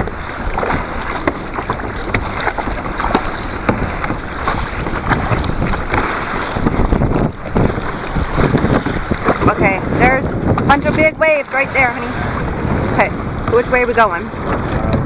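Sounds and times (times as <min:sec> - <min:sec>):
water splashing against kayak: 0:00.0 - 0:15.0
wind buffeting microphone: 0:00.0 - 0:15.0.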